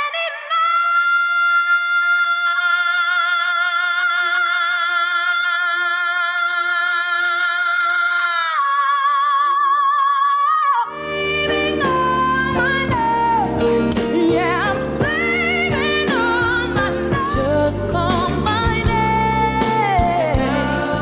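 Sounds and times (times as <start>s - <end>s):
full band accompaniment: 11.7s - 21.0s.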